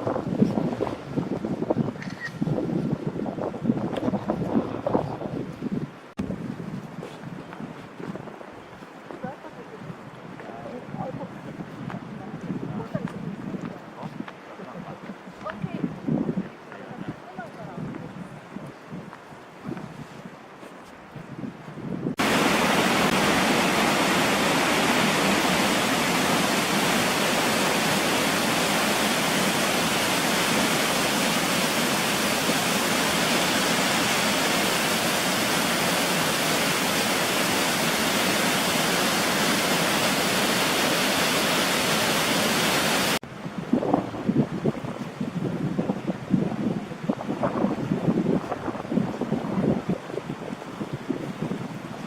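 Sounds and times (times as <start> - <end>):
stream water rushing: 22.2 - 45.0.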